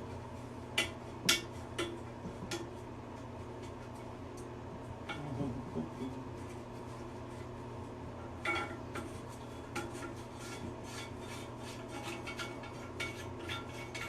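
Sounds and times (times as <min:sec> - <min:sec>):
low hum: 0:04.3 - 0:08.5.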